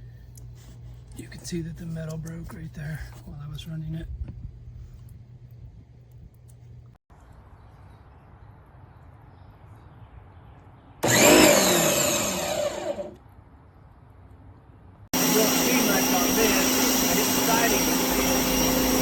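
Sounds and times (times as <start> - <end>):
pressure washer motor running: 11.0 - 13.2, 15.2 - 19.0.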